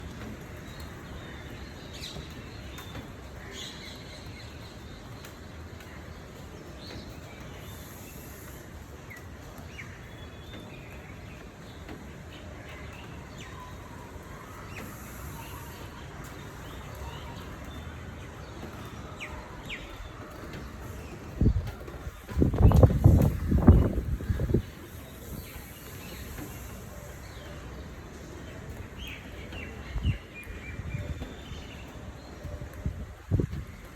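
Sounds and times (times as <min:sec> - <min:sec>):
brief high hiss: 0:14.7 - 0:16.0.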